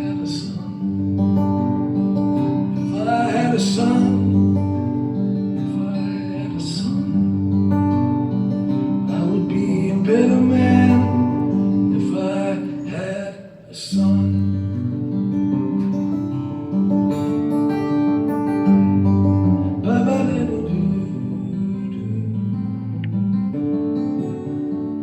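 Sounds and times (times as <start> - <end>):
person singing: 0.0 - 1.2, 2.8 - 4.9, 5.6 - 7.4, 9.1 - 14.6, 19.7 - 22.4
acoustic guitar strumming: 0.0 - 25.0.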